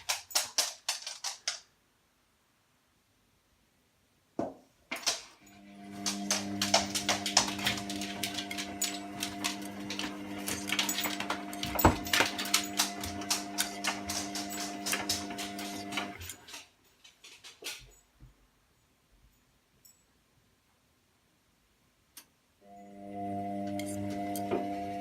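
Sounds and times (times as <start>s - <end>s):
rapid irregular clicking: 0.0s - 1.7s, 6.0s - 17.7s
washing machine motor hum: 5.5s - 16.5s, 22.7s - 25.0s.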